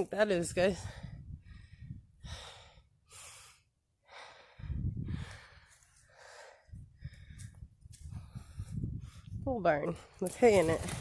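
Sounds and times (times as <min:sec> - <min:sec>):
person breathing heavily: 0:00.8 - 0:09.4.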